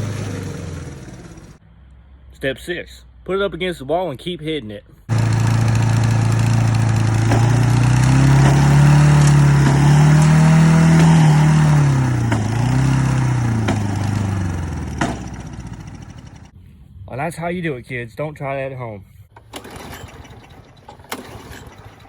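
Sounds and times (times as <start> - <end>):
lawn mower engine racing: 0.0 - 1.6, 5.1 - 16.5, 19.4 - 22.0
sharp knocks: 5.1 - 15.5.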